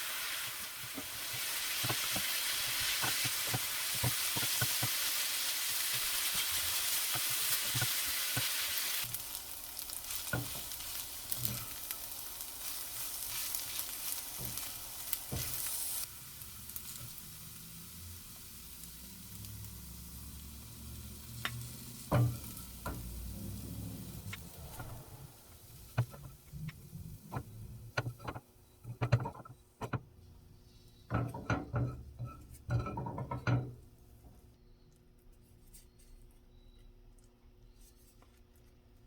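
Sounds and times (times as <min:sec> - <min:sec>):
food sizzling in frying pan: 0:00.0 - 0:29.4.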